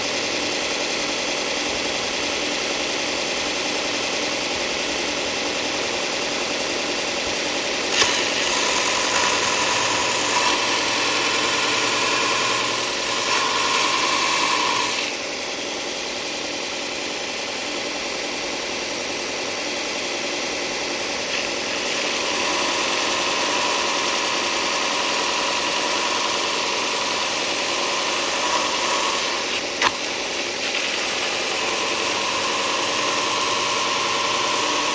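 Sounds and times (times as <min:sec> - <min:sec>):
power sander running: 0:05.2 - 0:15.8, 0:20.0 - 0:34.9.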